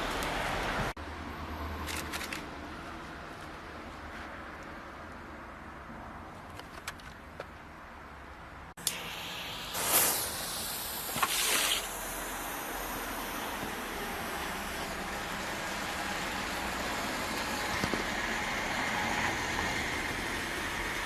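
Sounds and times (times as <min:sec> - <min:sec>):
faint firework crackles: 0:08.8 - 0:14.5
firework fountain hissing: 0:08.8 - 0:21.0.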